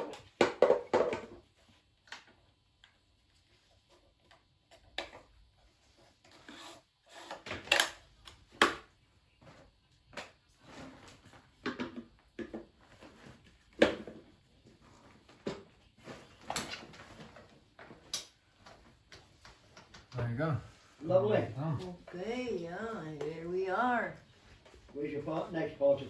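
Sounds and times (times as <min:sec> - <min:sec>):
objects knocking and clattering: 0:00.0 - 0:01.6, 0:10.1 - 0:20.2.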